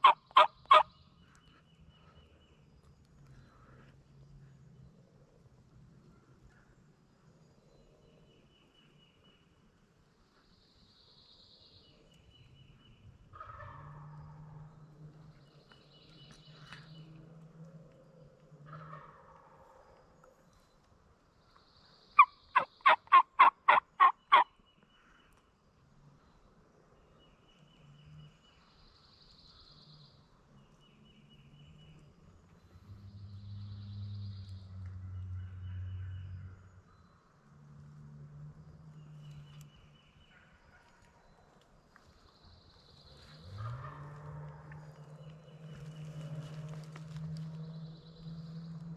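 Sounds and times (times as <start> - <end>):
distant turkey gobbling: 0.0 - 0.9, 13.4 - 14.6, 18.7 - 19.6, 22.2 - 24.5, 43.5 - 44.8
songbirds singing trilled phrases: 0.0 - 3.6, 21.4 - 25.4.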